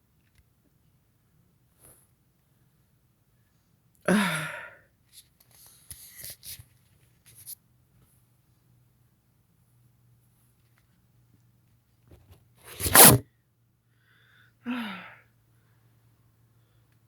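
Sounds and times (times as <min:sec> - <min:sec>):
person sneezing: 0:12.7 - 0:13.2
tissue rustling: 0:12.7 - 0:13.2.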